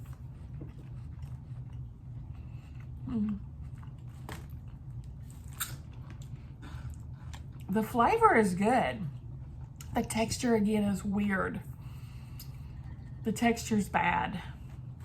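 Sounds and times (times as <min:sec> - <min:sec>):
person chewing crunchy snack: 0:00.0 - 0:07.7
steady low hum: 0:00.0 - 0:15.0.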